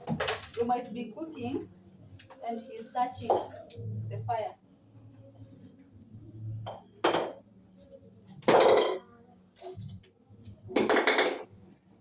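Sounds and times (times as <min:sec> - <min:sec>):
kitchenware clanking: 0:08.5 - 0:09.0.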